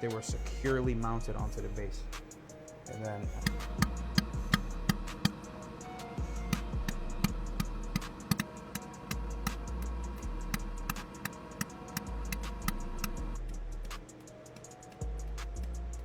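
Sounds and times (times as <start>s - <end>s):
music with ticking beat: 0.0s - 16.0s
low sustained bass line: 0.3s - 2.2s, 3.2s - 5.2s, 6.2s - 8.2s, 9.2s - 11.1s, 12.1s - 14.0s, 15.0s - 16.0s.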